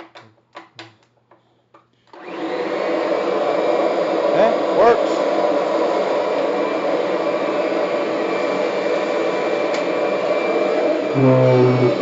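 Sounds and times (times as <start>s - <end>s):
upright vacuum cleaner running: 2.1s - 12.0s.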